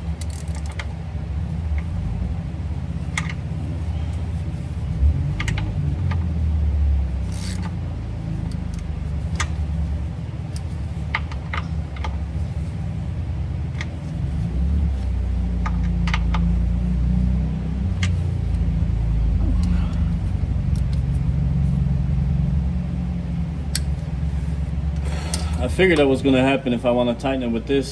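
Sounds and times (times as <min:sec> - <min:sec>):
low rumble: 0:00.0 - 0:27.9.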